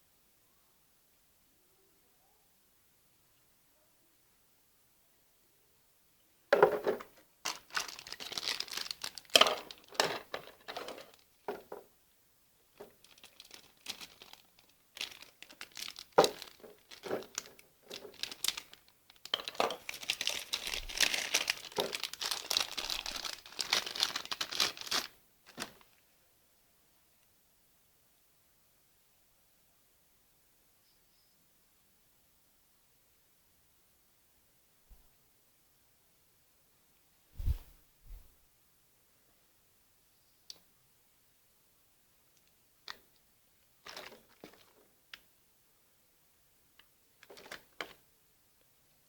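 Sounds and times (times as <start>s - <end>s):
packaging crinkling and rustling: 6.6s - 11.9s, 12.8s - 26.0s, 43.8s - 44.9s, 47.2s - 48.0s.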